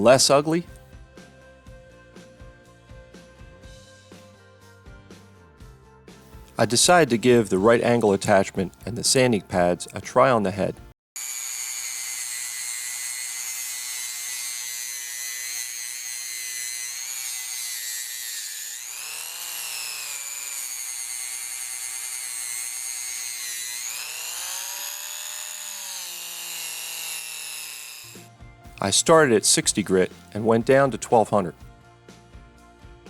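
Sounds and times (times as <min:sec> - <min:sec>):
rotary tool whining on metal: 0:11.2 - 0:28.3.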